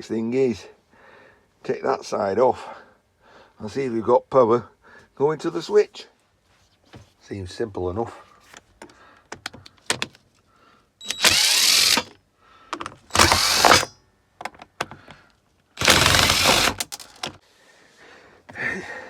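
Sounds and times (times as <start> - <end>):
clicks and knocks of handled parts: 8.4 - 10.4, 11.1 - 17.4
cordless screwdriver whirring: 11.0 - 12.2, 12.8 - 13.9, 15.8 - 17.4.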